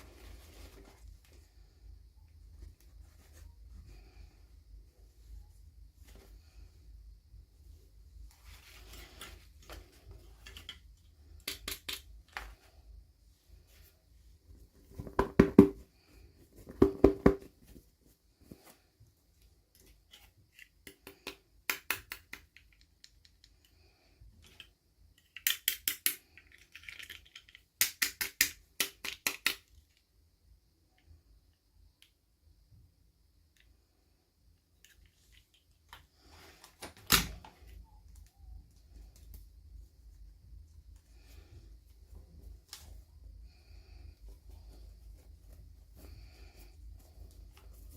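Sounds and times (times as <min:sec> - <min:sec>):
plastic pieces clicking and rattling: 0:24.4 - 0:29.8.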